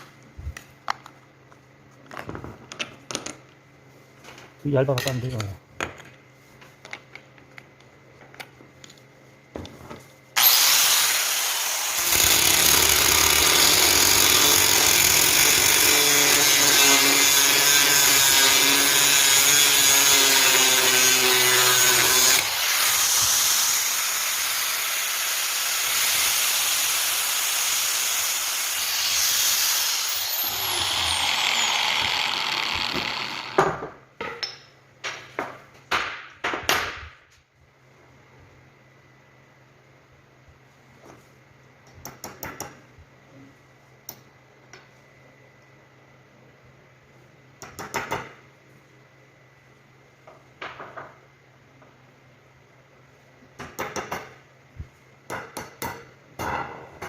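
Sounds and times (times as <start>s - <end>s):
power tool running under load: 10.4s - 33.8s.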